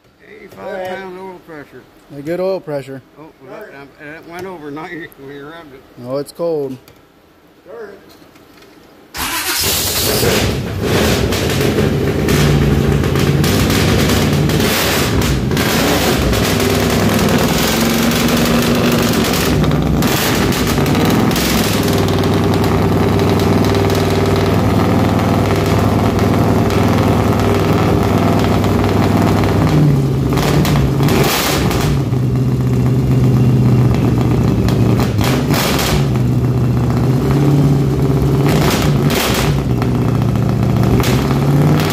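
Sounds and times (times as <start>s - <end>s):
car engine revving: 9.2s - 41.9s.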